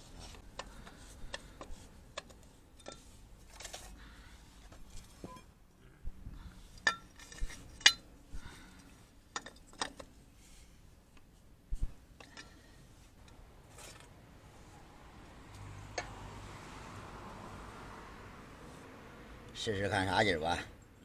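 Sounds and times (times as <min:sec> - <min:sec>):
metal tools clinking: 0:06.8 - 0:08.1.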